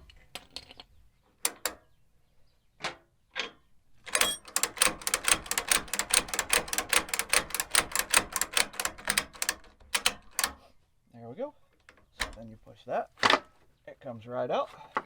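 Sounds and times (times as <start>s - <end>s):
ratchet clicking: 1.5s - 1.8s, 4.1s - 10.6s.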